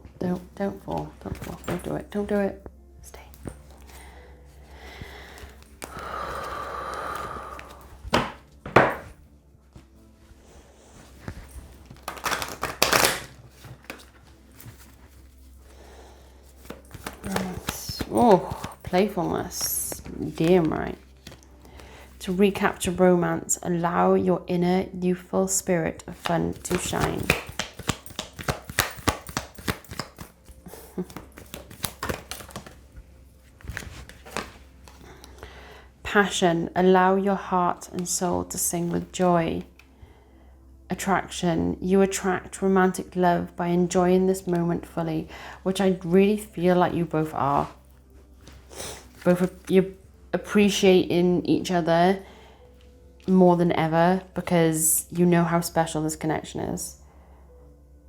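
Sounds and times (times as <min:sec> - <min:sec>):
cards being shuffled: 0:00.4 - 0:02.0, 0:05.0 - 0:06.5, 0:07.1 - 0:10.2, 0:10.9 - 0:15.7, 0:16.5 - 0:22.1, 0:26.1 - 0:35.3
cards knocking on table: 0:08.1 - 0:09.2, 0:26.2 - 0:30.3, 0:31.1 - 0:32.8.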